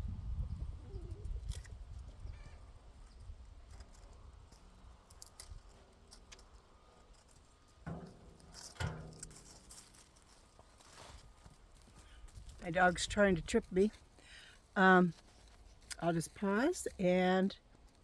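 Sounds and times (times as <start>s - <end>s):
rustling of vines: 1.0s - 12.9s.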